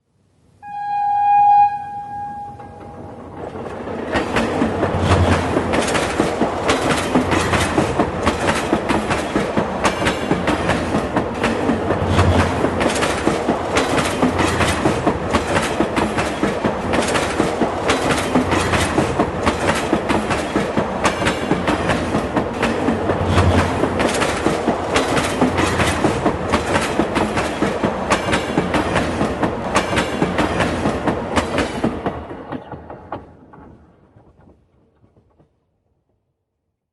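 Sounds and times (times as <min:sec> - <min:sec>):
short train horn: 0:00.6 - 0:03.1
train wheels clacking on rails: 0:02.6 - 0:35.6.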